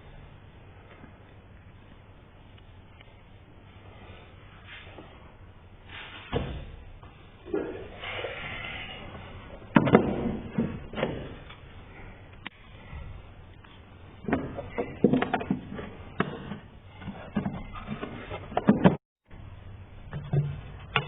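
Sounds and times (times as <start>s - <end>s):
knocks of tools and parts: 9.7s - 11.6s, 14.2s - 19.0s.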